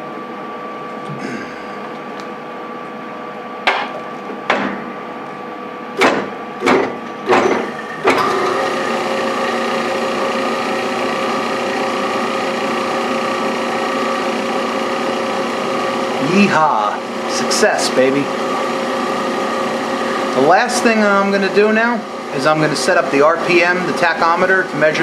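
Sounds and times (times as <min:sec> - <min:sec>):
sharp metal clunks: 0:06.0 - 0:08.2
lathe motor running: 0:07.6 - 0:25.0.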